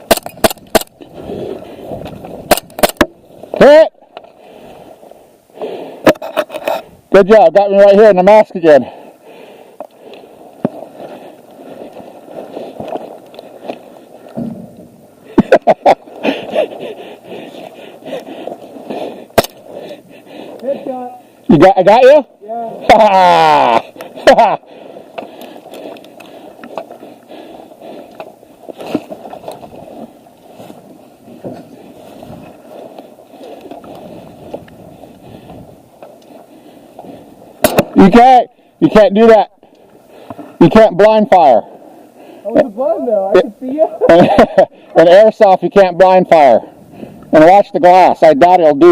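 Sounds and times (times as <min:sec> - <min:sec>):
sharp clicks: 0:02.4 - 0:03.1
rustling movement: 0:09.2 - 0:21.4, 0:23.8 - 0:38.1
rustling and scuffing: 0:28.6 - 0:37.3
airsoft gun shots: 0:37.6 - 0:38.0.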